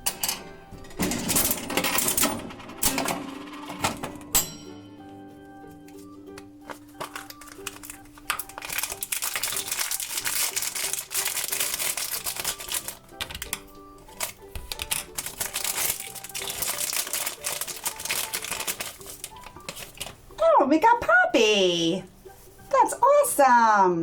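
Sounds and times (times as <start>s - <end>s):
light background music: 0.0s - 24.0s
plastic bag crinkling: 6.6s - 20.3s.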